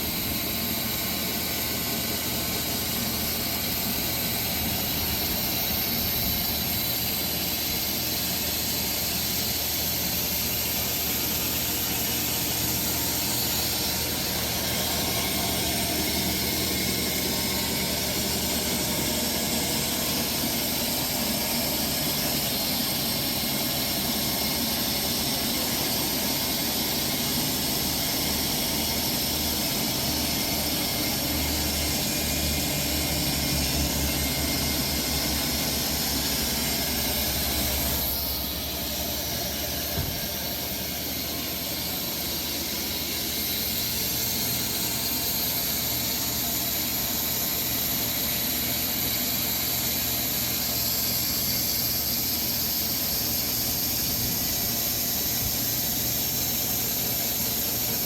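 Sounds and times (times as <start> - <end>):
engine hum: 29.8 - 42.0.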